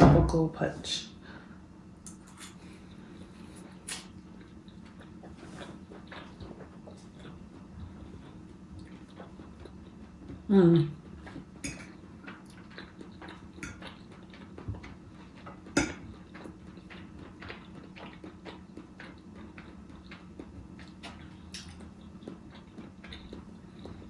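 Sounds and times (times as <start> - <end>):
chewing and mouth sounds: 2.1 - 24.0
fork scraping on a plate: 2.3 - 2.6.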